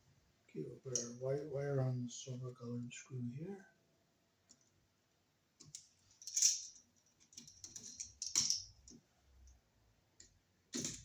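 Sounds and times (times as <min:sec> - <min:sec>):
small clicks and rattles: 0:05.6 - 0:09.6.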